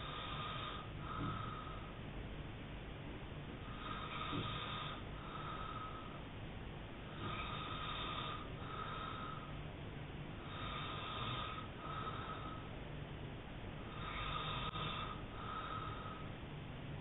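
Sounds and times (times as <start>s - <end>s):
man snoring: 0.0s - 1.9s, 3.6s - 6.2s, 7.1s - 9.5s, 10.4s - 12.7s, 13.8s - 16.2s.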